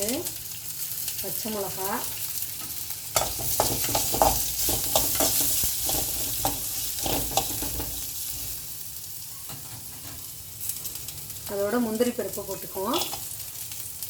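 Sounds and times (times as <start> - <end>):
spices sizzling in oil: 0.0 - 14.0
spoon scraping pan: 3.2 - 8.0.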